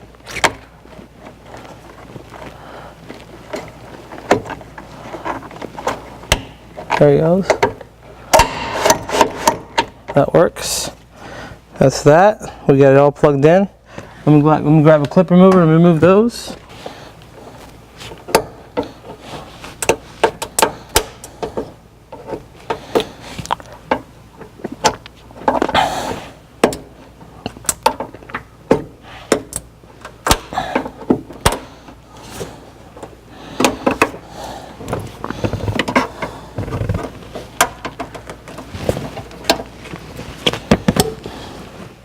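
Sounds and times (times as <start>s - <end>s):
scraping and rustling: 34.8s - 42.0s.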